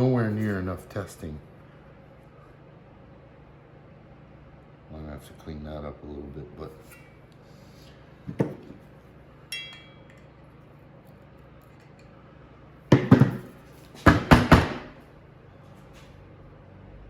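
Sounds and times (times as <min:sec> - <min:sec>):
ringing metallic clink: 0:09.5 - 0:10.3
hard knocks on metal parts: 0:12.9 - 0:15.0.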